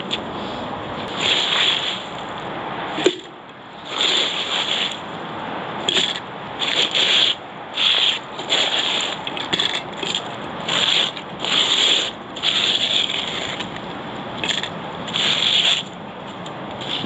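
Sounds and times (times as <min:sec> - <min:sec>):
high-pressure water spraying: 0:01.1 - 0:02.4, 0:03.8 - 0:05.1, 0:05.9 - 0:13.6, 0:14.4 - 0:16.0.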